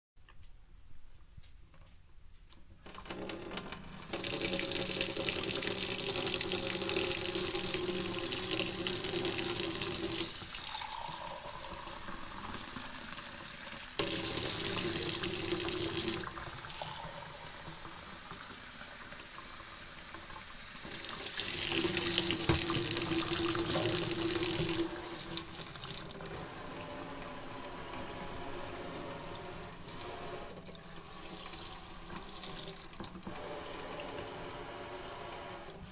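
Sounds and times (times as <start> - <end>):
tap water splashing into sink: 13.4 - 26.3.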